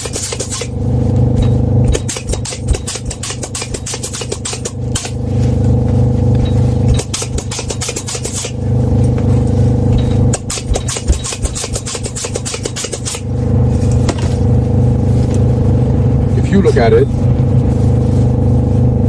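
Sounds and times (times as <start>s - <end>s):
steady low hum: 0.0s - 19.0s
rubbing strokes on wetsuit: 13.4s - 19.0s.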